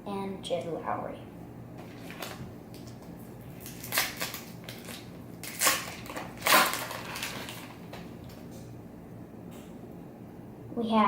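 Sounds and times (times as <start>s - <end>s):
foil wrapper crinkling and tearing: 1.8s - 8.1s.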